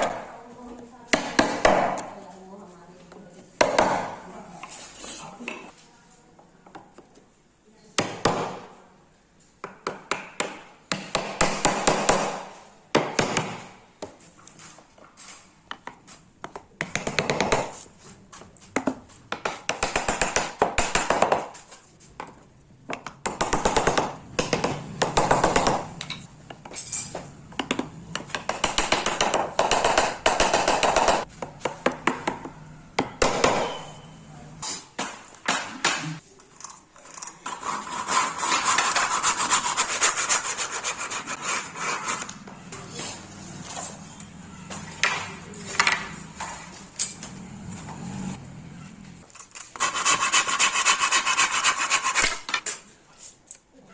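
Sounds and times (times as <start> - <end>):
hand tool scraping wood: 37.3 - 44.0, 49.2 - 52.6.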